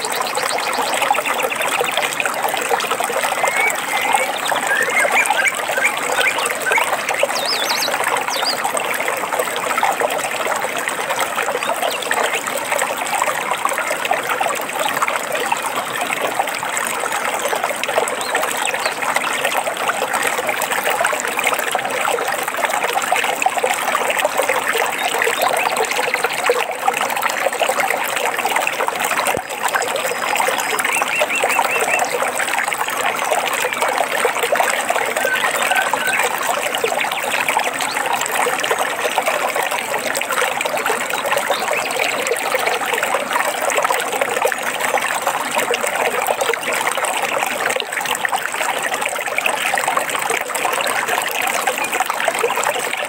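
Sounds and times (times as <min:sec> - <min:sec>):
stream babbling over stones: 0:00.0 - 0:53.0
faint bird chirps: 0:03.3 - 0:08.6, 0:35.2 - 0:36.4.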